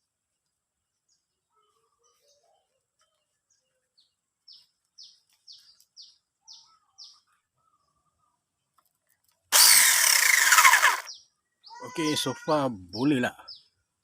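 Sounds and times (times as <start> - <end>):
bird chirping: 0.8 - 9.2, 10.1 - 14.0
mini chainsaw starting: 9.5 - 11.1.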